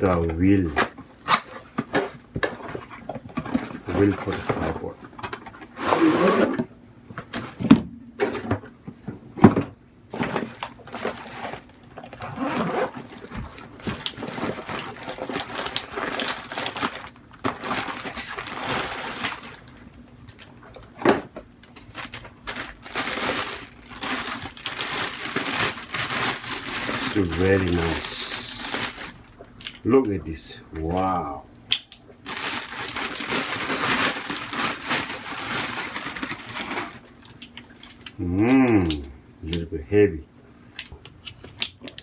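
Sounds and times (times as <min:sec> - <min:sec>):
scraping and rustling: 0:10.1 - 0:19.9, 0:20.7 - 0:29.5, 0:32.3 - 0:37.2.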